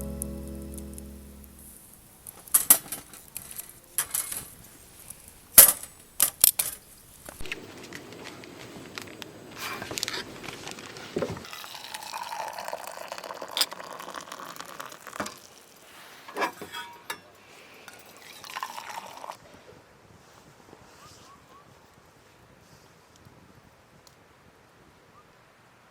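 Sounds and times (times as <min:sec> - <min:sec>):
liquid pouring into a cup: 0:11.5 - 0:15.9, 0:18.0 - 0:19.4
tableware clinking: 0:16.6 - 0:17.3.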